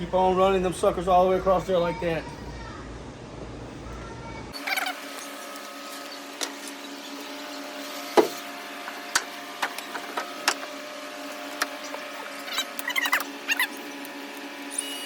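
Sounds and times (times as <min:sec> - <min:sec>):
steady mechanical hum: 0:00.0 - 0:15.0.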